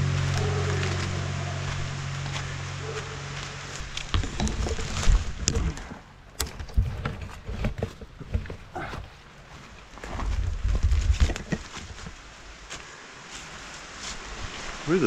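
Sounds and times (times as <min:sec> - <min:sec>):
footsteps crunching in snow: 0:00.0 - 0:05.4, 0:08.8 - 0:14.9.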